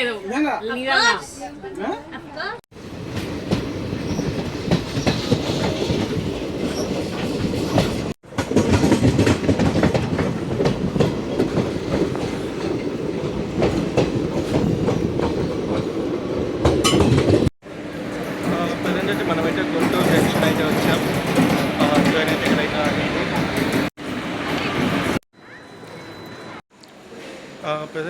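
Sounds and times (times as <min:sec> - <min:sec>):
train wheels clattering on rails: 0:03.0 - 0:23.9.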